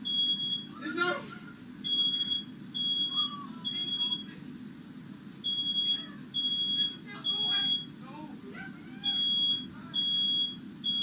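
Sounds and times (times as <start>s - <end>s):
smoke alarm beeping: 0.0s - 0.7s, 1.8s - 4.3s, 5.4s - 8.0s, 9.1s - 11.0s.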